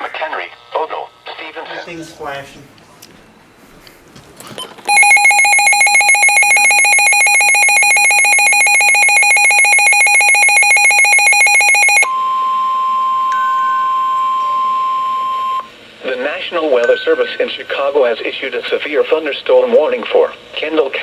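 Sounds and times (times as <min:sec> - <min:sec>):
rapid pulsing alarm beeps: 0:04.9 - 0:13.2
steady single alarm tone: 0:04.9 - 0:15.7.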